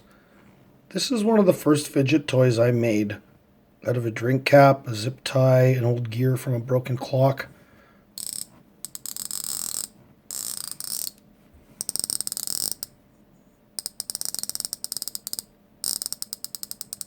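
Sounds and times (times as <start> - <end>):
zip tie clicking over gear: 8.2 - 11.2, 11.8 - 12.9, 13.8 - 17.0.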